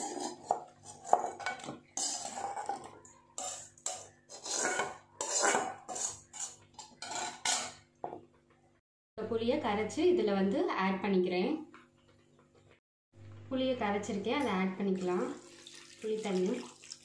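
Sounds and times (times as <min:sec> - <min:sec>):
metal ladle scraping cookware: 0:00.0 - 0:07.8.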